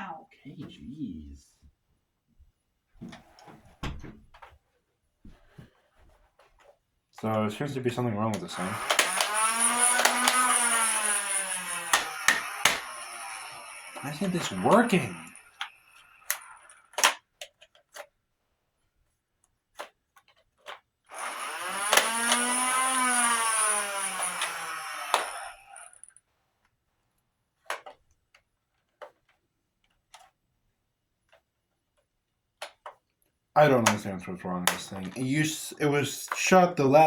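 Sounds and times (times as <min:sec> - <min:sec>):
toy blaster motor whirring: 0:08.4 - 0:17.2, 0:21.1 - 0:26.2.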